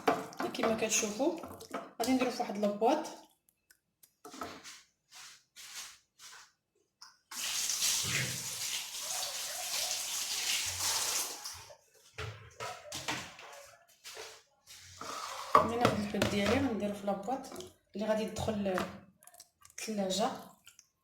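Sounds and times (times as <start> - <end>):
water running from a tap: 7.3 - 11.7.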